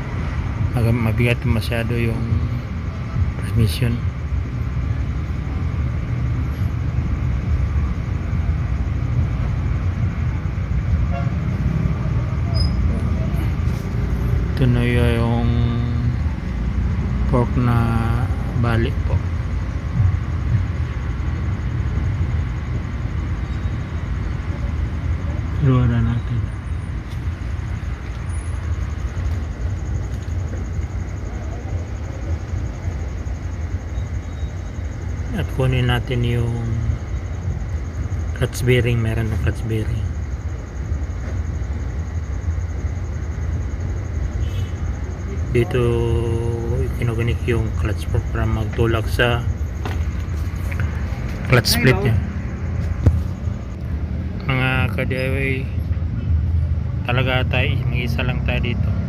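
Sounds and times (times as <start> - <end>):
low rumbling background noise: 0.0 - 59.0.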